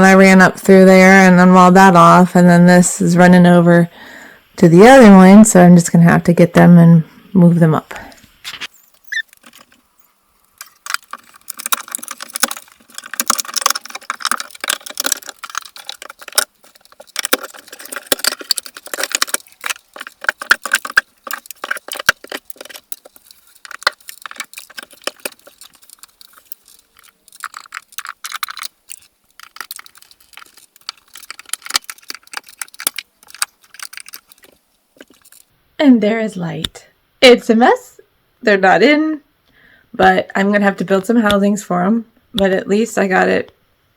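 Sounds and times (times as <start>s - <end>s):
metal hardware clinking: 8.7s - 35.5s.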